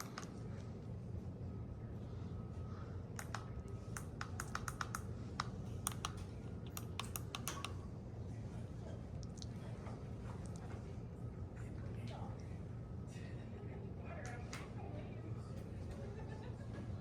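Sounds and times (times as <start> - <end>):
ceiling fan humming: 0.0 - 17.0
light clicks: 3.2 - 7.8.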